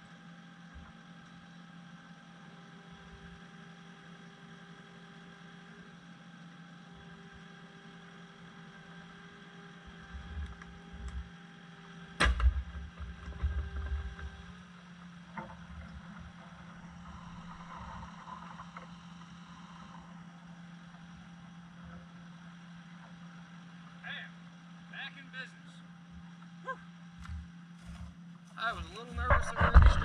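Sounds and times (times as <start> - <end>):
diesel engine running: 12.0 - 30.0.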